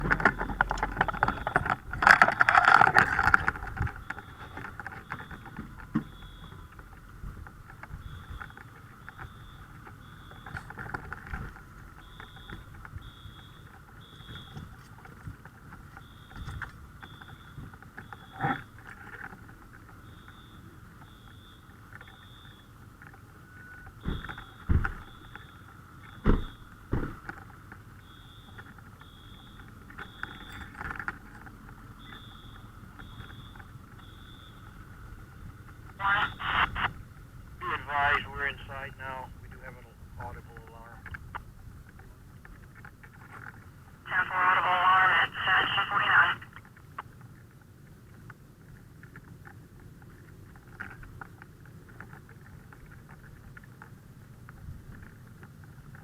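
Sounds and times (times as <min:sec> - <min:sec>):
fire alarm beeping: 0:00.0 - 0:15.1, 0:15.9 - 0:19.3, 0:20.0 - 0:22.8, 0:23.4 - 0:27.2, 0:28.0 - 0:36.9
sharp thumps: 0:26.2 - 0:27.3.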